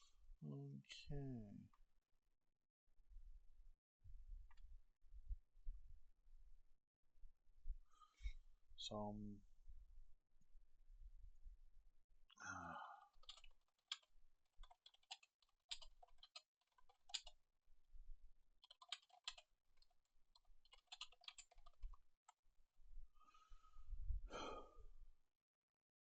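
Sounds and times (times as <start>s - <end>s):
breathy exhale: 12.4s - 13.0s, 23.2s - 24.8s
keyboard typing: 13.1s - 17.4s, 18.6s - 22.0s.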